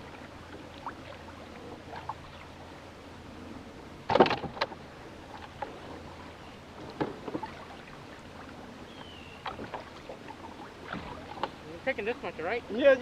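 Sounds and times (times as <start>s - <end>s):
loud clatter in a boat: 4.1s - 4.8s.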